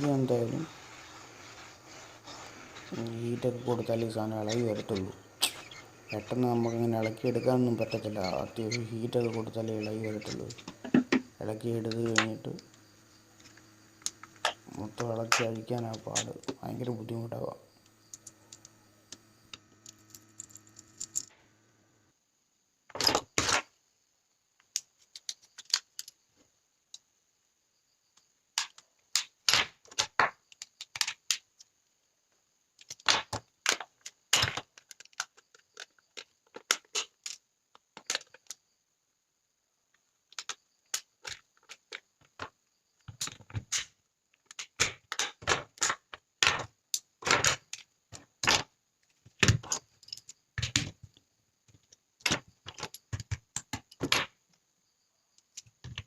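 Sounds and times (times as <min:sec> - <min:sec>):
plastic casing clicking and snapping: 0:24.6 - 0:26.2, 0:28.6 - 0:31.7, 0:32.8 - 0:37.4, 0:40.3 - 0:42.5.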